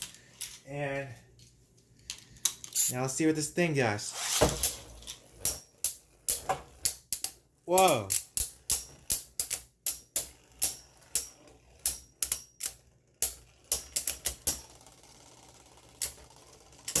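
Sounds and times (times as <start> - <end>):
spinning tops clacking: 4.6 - 17.0.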